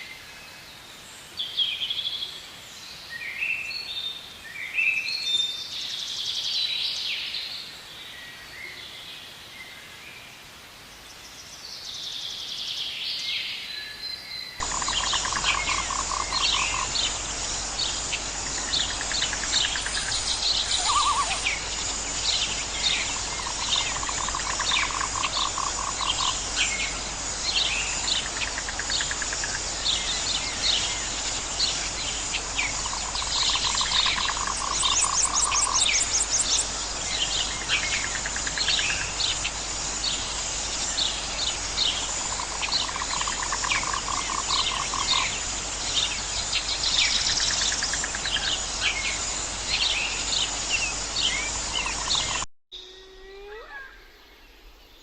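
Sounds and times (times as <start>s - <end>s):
high insect hiss: 14.6s - 55.0s
quick bird chirps: 17.8s - 21.6s.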